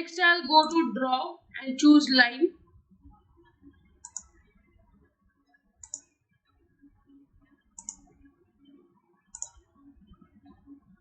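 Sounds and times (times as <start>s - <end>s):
computer mouse clicking: 0.6s - 0.8s, 4.0s - 4.5s, 5.8s - 6.2s, 7.8s - 8.2s, 9.3s - 9.7s.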